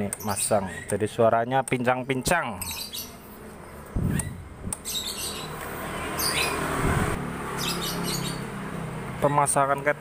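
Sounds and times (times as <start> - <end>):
high squeaky chirps: 3.9 - 6.6.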